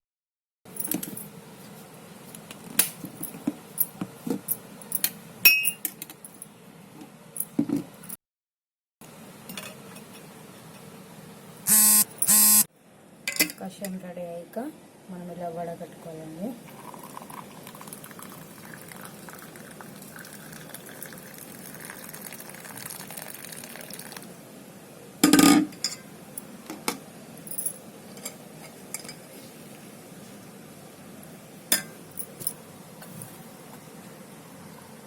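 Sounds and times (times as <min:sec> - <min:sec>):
liquid trickling while poured: 0:16.7 - 0:24.3.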